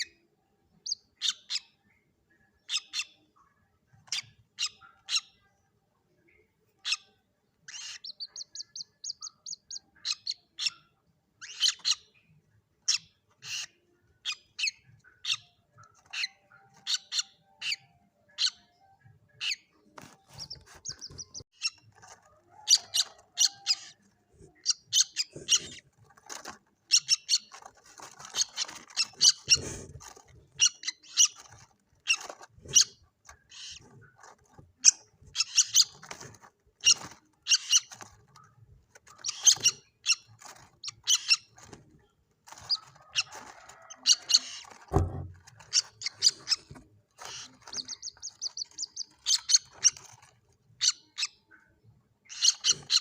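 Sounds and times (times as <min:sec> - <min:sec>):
chicks peeping: 0:00.0 - 0:05.4, 0:06.4 - 0:53.0
dull low thump: 0:44.9 - 0:45.4.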